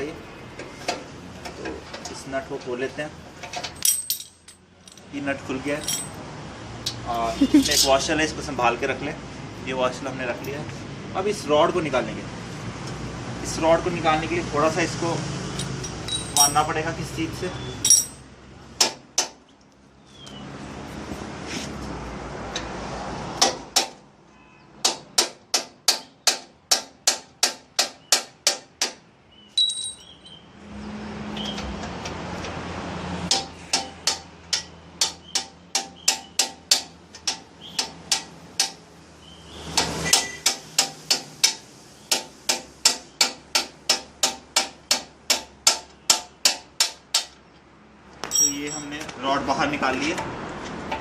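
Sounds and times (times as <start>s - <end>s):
hammer tapping metal axle: 33.3s - 38.8s, 39.8s - 47.4s.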